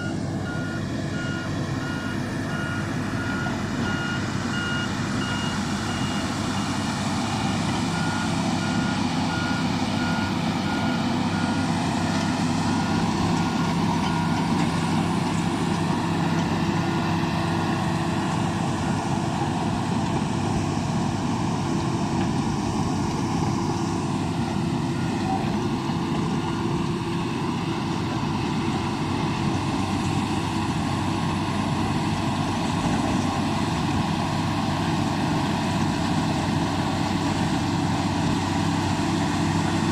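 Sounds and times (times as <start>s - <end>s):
reversing alarm beeping: 0.0s - 6.9s, 7.7s - 14.9s, 24.4s - 25.6s
bulldozer diesel engine running: 0.0s - 39.9s.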